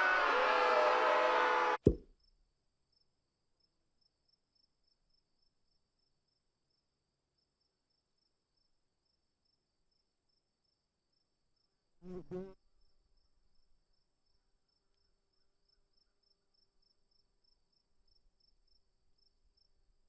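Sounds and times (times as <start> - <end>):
busy voices: 0.0 - 1.7
single sharp knock: 1.8 - 2.1.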